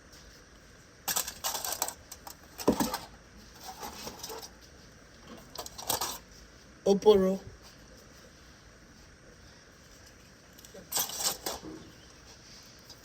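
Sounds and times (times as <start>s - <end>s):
handling noise clicking and rustling: 0.1s - 6.4s, 10.0s - 13.0s.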